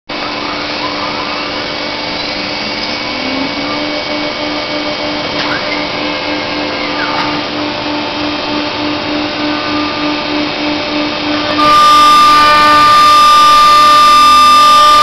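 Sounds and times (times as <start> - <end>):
router machine whirring: 0.1 - 15.0
pulsing low hum: 0.2 - 15.0.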